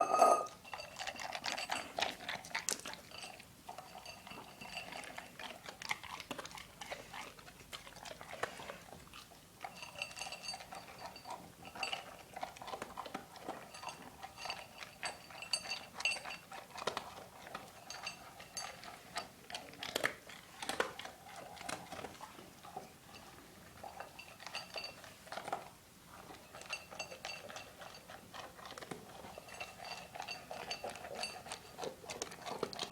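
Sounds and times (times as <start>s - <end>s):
bowl clinking: 0.0s - 1.0s
dog chewing and crunching: 0.5s - 32.9s.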